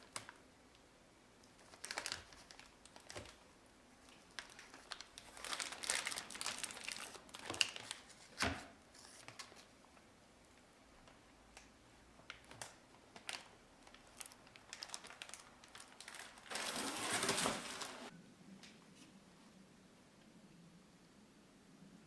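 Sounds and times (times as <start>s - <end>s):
rustling scrape: 16.1s - 18.1s.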